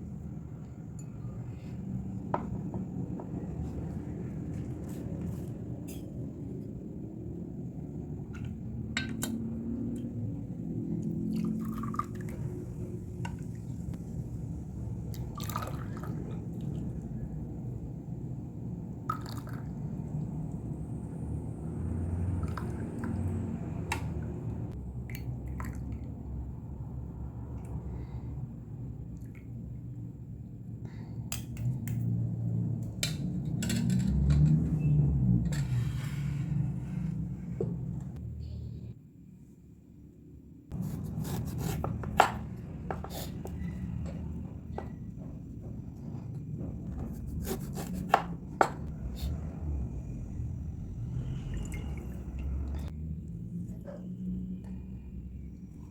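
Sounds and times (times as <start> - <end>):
low background rumble: 0.0 - 55.9
liquid being poured: 11.1 - 12.8, 15.2 - 16.9
utensils and dishes clicking: 33.1 - 34.8.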